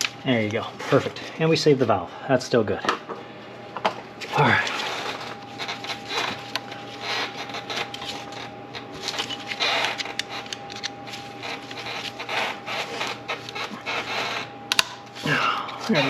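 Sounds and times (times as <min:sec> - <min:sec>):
clicks and scraping of plastic parts: 0:05.0 - 0:14.9.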